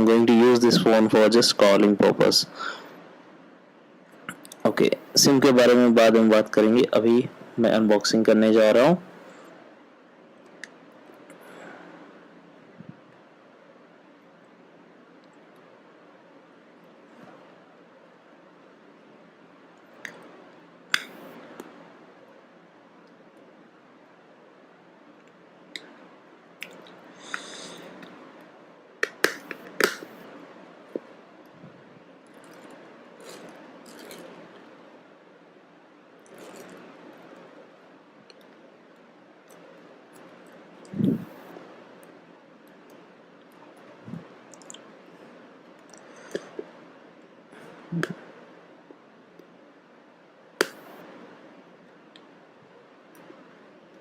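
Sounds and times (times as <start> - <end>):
plastic wrap sharp snap: 29.0 - 30.1, 50.6 - 50.9.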